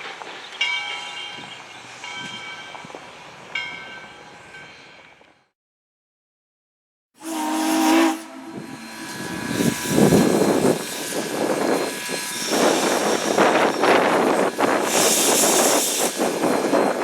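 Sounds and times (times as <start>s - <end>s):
steam whistle blast: 7.2s - 11.4s
steam hissing: 7.2s - 17.0s
steam locomotive exhaust chuffs: 7.2s - 17.0s.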